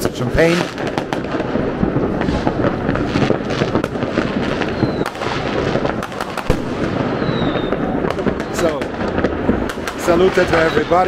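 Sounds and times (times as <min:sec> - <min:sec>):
fireworks crackling and popping: 0:00.0 - 0:11.0
firework whistle: 0:02.1 - 0:08.8, 0:09.9 - 0:11.0.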